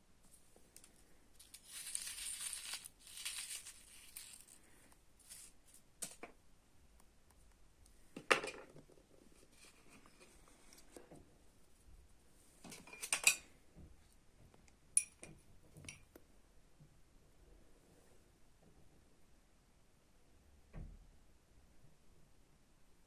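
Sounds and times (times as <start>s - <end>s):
crinkling handling noise: 0.2s - 6.4s.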